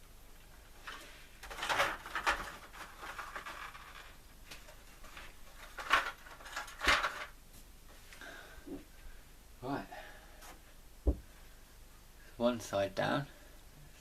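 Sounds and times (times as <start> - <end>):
scrapes and knocks of handling: 0.5 - 8.1.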